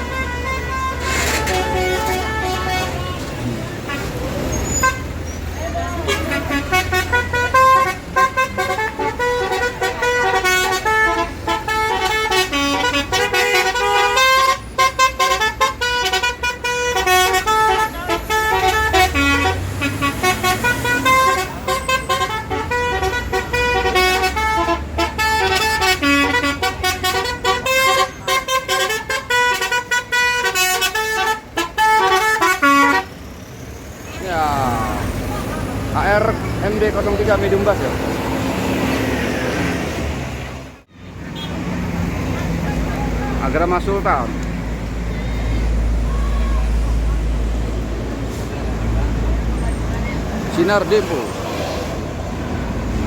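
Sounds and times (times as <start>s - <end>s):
multi-tone bus horn tune: 0.0s - 33.3s, 40.7s - 41.6s
bus engine running: 0.0s - 53.0s.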